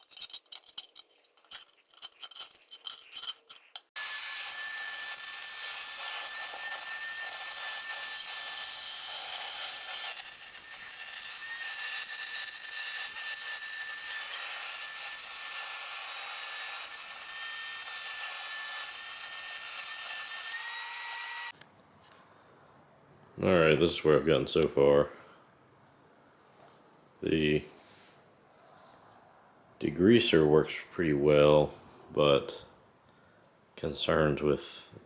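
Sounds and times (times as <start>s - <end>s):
small power tool whining: 4.0s - 21.5s.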